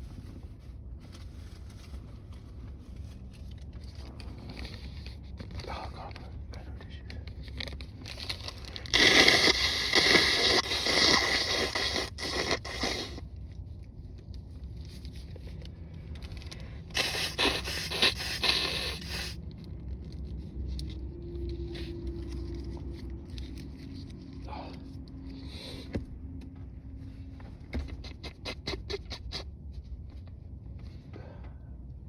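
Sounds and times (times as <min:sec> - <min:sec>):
tissue rustling: 0:00.0 - 0:03.8
person blowing nose: 0:08.8 - 0:13.2, 0:16.9 - 0:19.4, 0:27.8 - 0:29.5.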